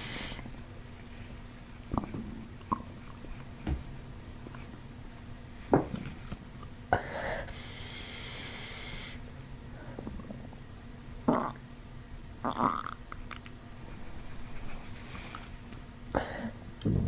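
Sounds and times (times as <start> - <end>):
long breath: 0.0 - 0.5
stomach gurgling pops: 1.9 - 3.8.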